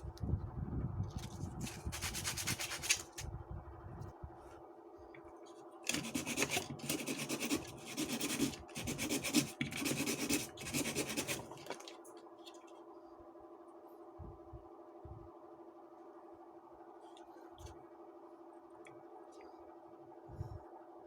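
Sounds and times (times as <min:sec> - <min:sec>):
steady low hum: 0:00.0 - 0:21.0
scraping or rubbing: 0:01.2 - 0:03.2.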